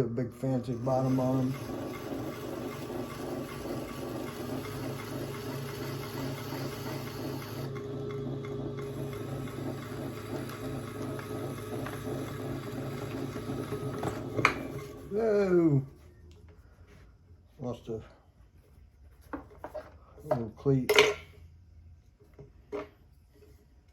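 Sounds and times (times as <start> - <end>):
pottery wheel humming: 0.0 - 18.1
tool scraping clay: 0.4 - 15.9.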